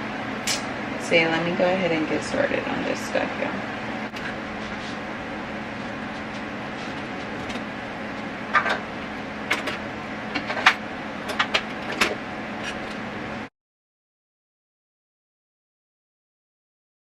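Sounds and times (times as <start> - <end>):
steady background hum: 0.0 - 13.5.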